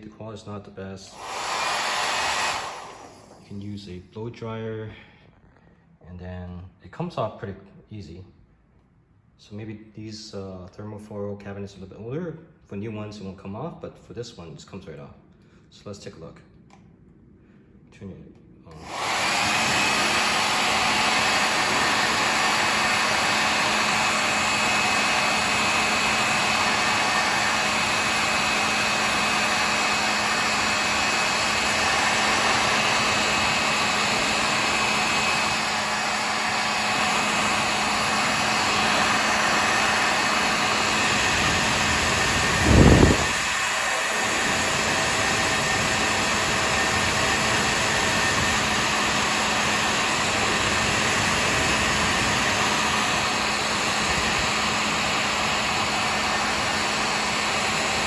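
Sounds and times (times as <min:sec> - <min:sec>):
hair dryer running: 0:01.0 - 0:03.7, 0:18.7 - 0:58.0.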